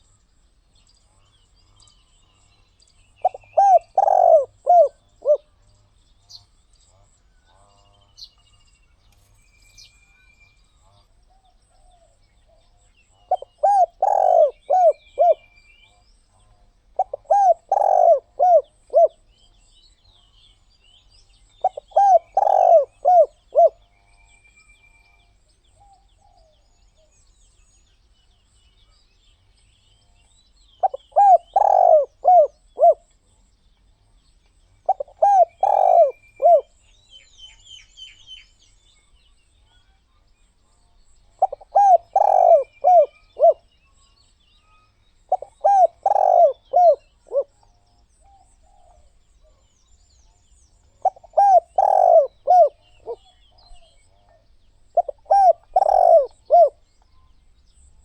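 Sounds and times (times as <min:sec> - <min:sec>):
small birds chirping: 0:00.0 - 0:58.0
dove cooing: 0:03.2 - 0:05.5, 0:13.2 - 0:15.6, 0:17.0 - 0:19.3, 0:21.6 - 0:24.0, 0:30.8 - 0:33.1, 0:34.8 - 0:36.8, 0:41.4 - 0:43.7, 0:45.3 - 0:47.7, 0:51.0 - 0:56.9.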